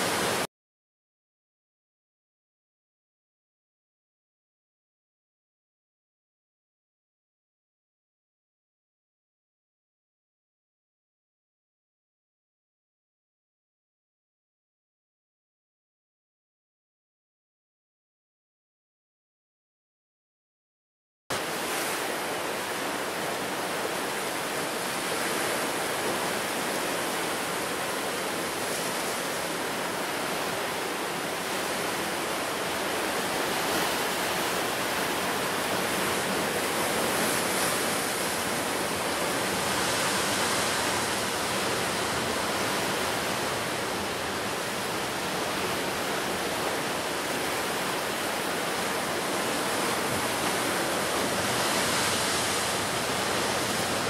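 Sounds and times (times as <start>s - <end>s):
waves breaking on shore: 0.0s - 0.5s, 21.3s - 54.0s.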